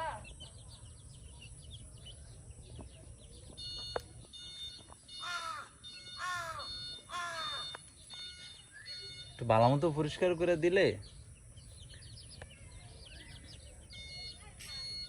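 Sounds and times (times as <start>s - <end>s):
crow cawing: 5.2s - 7.8s.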